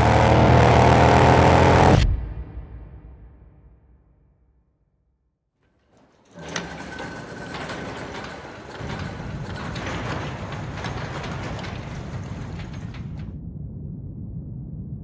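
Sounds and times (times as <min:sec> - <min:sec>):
rattling mechanical clicking noise: 0:05.7 - 0:13.4
deep rumble: 0:08.2 - 0:15.0.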